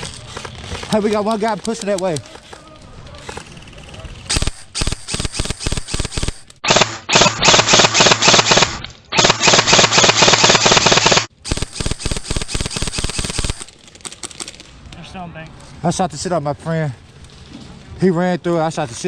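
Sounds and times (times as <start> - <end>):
airsoft guns firing: 4.3 - 14.4.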